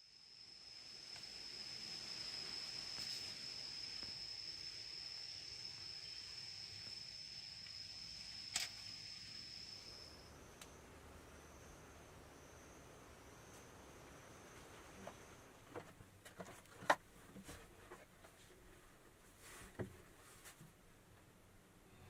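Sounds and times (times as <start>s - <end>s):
insect trilling: 0.0s - 10.7s
sharp click: 8.5s - 8.8s.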